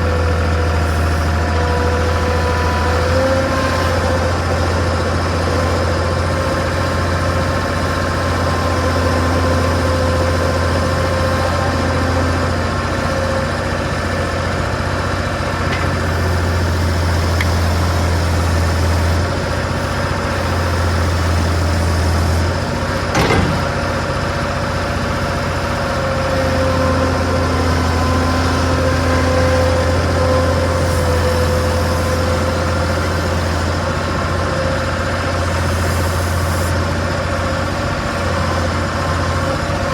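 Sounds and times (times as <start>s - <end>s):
skid steer diesel engine running: 0.0s - 39.9s
sharp metal clank: 23.2s - 24.0s.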